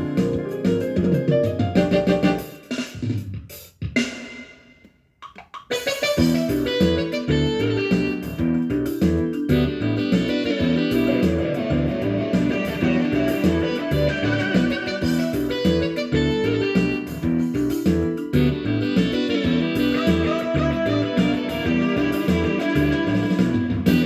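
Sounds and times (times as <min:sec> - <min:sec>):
guitar music: 0:06.1 - 0:24.0.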